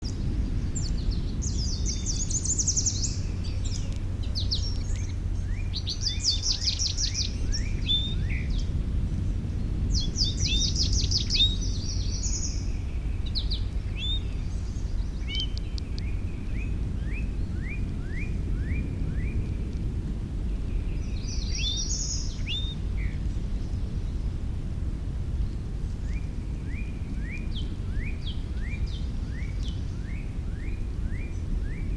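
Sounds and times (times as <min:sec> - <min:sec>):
low background rumble: 0:00.0 - 0:31.9
songbirds singing: 0:00.0 - 0:31.9.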